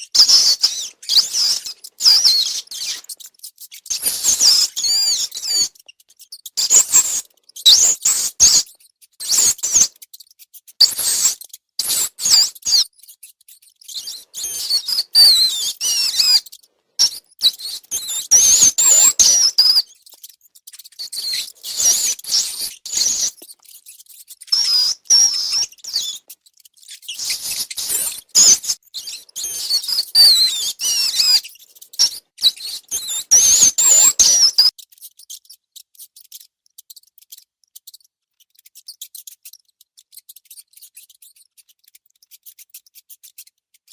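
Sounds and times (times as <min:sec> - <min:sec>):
rats squeaking: 0:00.0 - 0:43.9
sharp clicks and scratches: 0:00.0 - 0:43.9.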